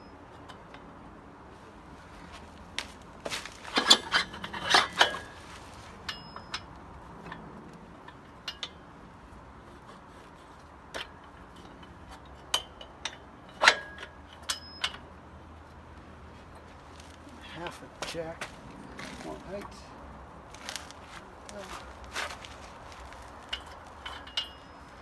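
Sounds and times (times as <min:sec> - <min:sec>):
metal hardware clinking: 0:02.8 - 0:06.6.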